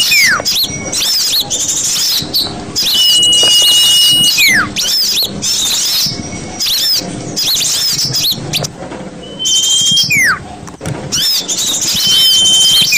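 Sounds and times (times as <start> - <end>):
falling whistle: 0.0 - 10.4, 11.1 - 12.9
high bird chirps and twitters: 0.0 - 10.4, 11.1 - 12.9
long high whistle: 2.8 - 5.2, 9.3 - 10.4, 11.9 - 12.9.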